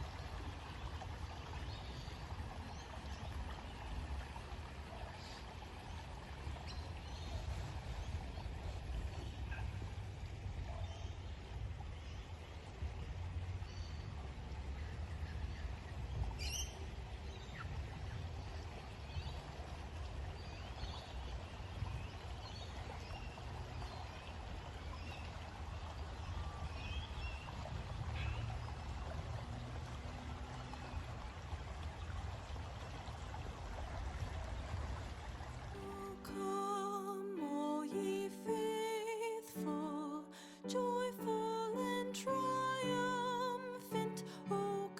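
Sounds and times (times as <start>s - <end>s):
low uneven rumble: 0.0s - 36.0s.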